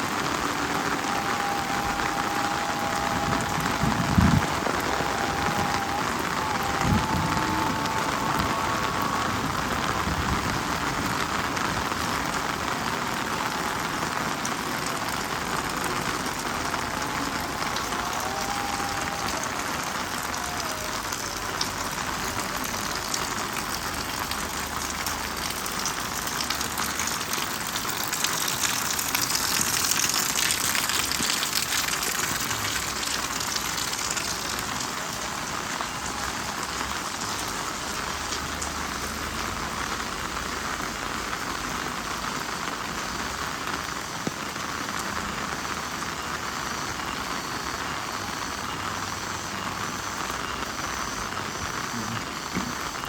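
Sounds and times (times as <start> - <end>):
heavy rain pattering: 0.0 - 53.0.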